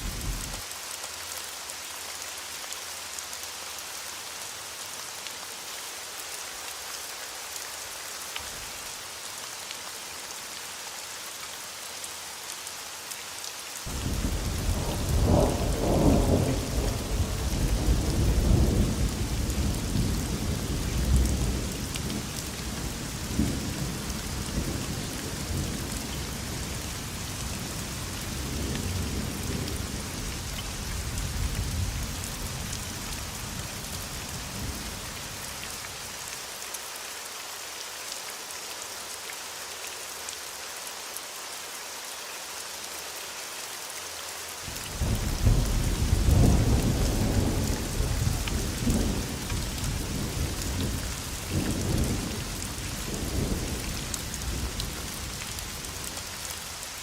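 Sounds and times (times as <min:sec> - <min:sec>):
rolling thunder: 0:00.0 - 0:00.6, 0:13.9 - 0:21.6
steady rain falling: 0:00.0 - 0:57.0.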